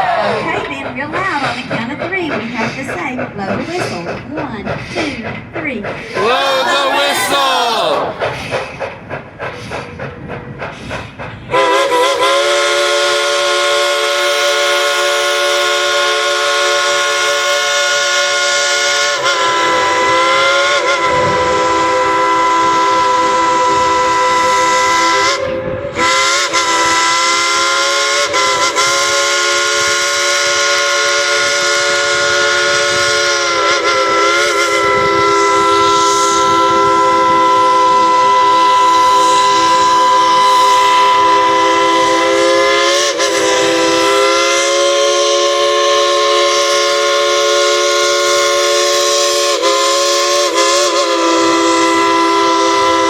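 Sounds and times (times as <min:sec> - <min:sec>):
steam hissing: 0:00.0 - 0:53.0
steam locomotive chime whistle: 0:11.5 - 0:53.0.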